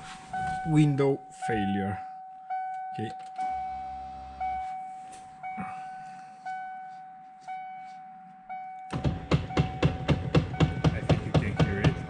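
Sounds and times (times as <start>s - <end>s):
car warning chime: 0.0s - 12.0s
knock: 9.0s - 12.0s.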